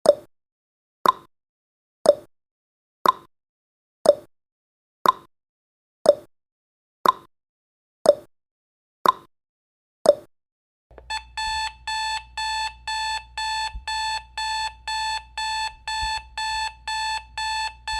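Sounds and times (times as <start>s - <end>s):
timer ticking: 10.9s - 17.9s
alarm clock beeping: 11.0s - 17.9s.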